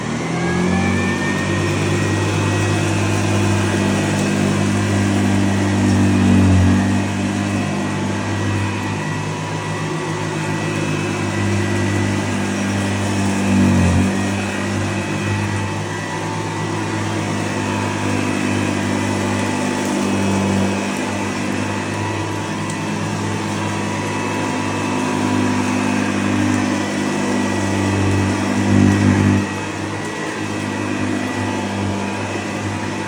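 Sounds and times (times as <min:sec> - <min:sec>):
vacuum cleaner running on carpet: 0:00.0 - 0:33.0.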